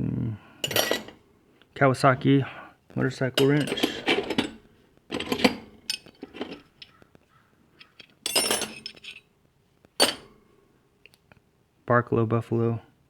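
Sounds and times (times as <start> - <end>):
steel wrenches clinking: 0.6 - 1.2, 3.3 - 7.0, 7.8 - 9.3, 10.0 - 10.4.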